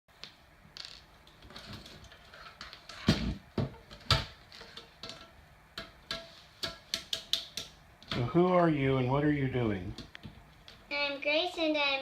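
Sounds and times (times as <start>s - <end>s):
hard objects knocking and clicking: 1.2s - 8.4s.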